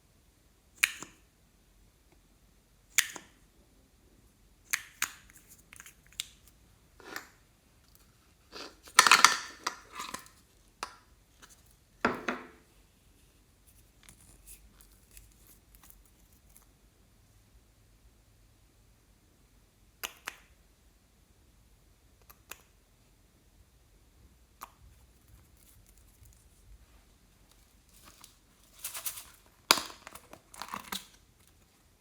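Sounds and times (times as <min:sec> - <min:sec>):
packaging crinkling and tearing: 0:27.6 - 0:31.6.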